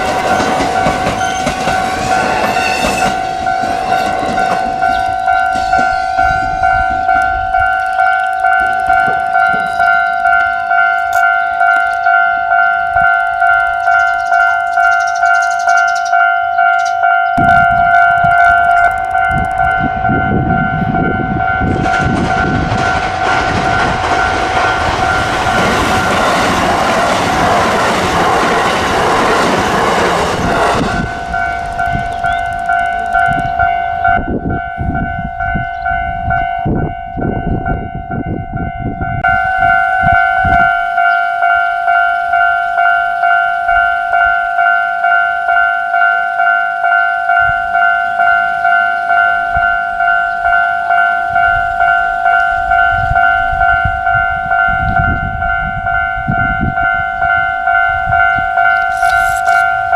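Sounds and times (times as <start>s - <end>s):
train wheel clacks: 0.0s - 6.3s, 16.7s - 34.4s
train rushing past: 0.0s - 11.8s, 17.4s - 44.7s
level crossing warning bells: 0.0s - 59.9s.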